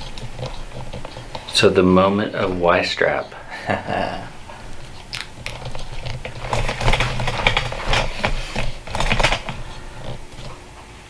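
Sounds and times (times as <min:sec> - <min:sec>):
steady low hum: 0:00.0 - 0:11.0
strap rustling and clicking: 0:04.0 - 0:10.7.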